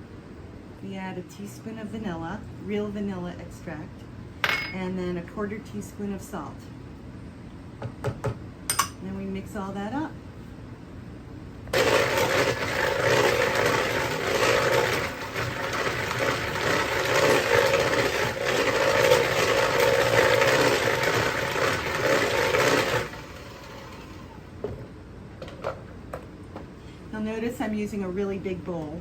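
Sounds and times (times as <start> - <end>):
electric mixer in liquid batter: 11.7 - 24.6.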